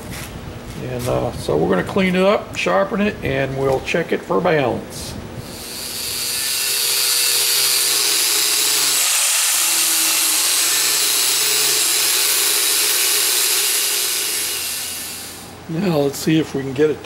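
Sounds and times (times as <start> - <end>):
power grinder grinding metal: 5.5 - 15.5.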